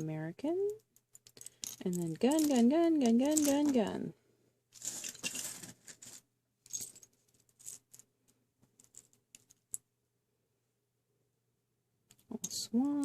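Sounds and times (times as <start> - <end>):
plastic charms clattering: 1.0 - 3.9, 4.8 - 8.0.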